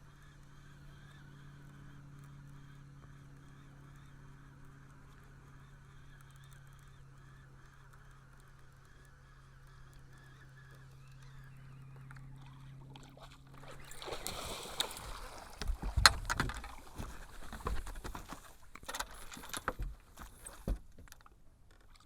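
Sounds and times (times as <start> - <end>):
steady low hum: 0.0 - 22.0
water splashing at a boat: 10.3 - 22.0
knocks and thumps: 15.6 - 21.2.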